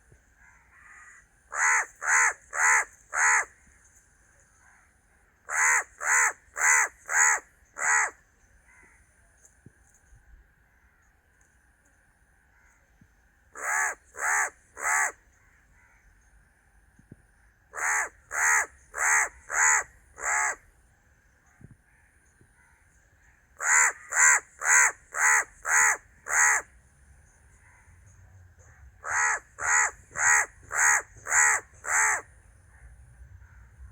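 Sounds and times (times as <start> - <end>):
crow cawing: 0.4 - 3.5, 5.5 - 9.0, 13.6 - 15.2, 17.8 - 20.6, 23.6 - 26.7, 29.0 - 32.3.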